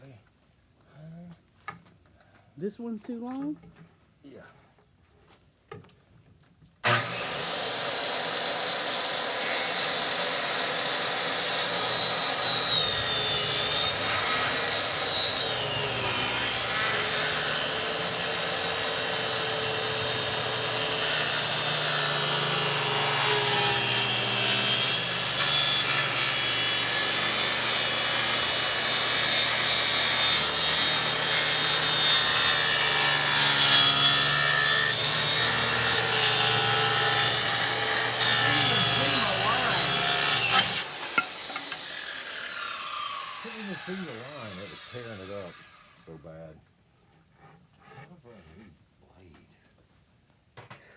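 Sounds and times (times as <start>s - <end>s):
power tool working wood: 6.8s - 46.2s.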